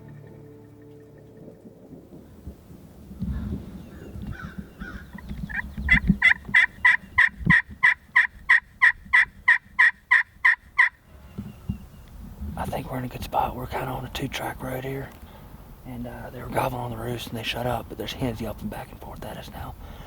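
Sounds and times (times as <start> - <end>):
turkey yelping: 4.3 - 11.0.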